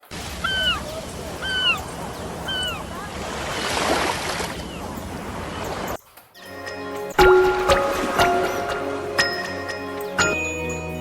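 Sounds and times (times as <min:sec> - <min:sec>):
bird whistling call: 0:00.4 - 0:02.9.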